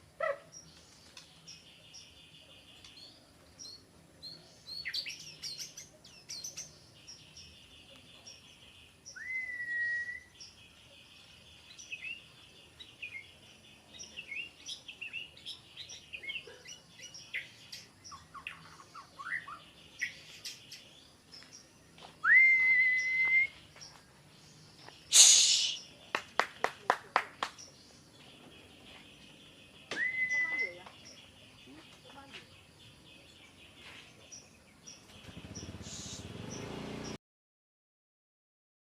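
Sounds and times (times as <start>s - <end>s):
bird singing whistles: 9.1s - 10.5s, 18.1s - 20.2s, 22.2s - 23.7s, 25.1s - 25.9s, 29.8s - 31.0s
sharp bird clicks: 24.8s - 26.4s
harsh bird rasp: 25.1s - 25.9s, 35.7s - 36.4s.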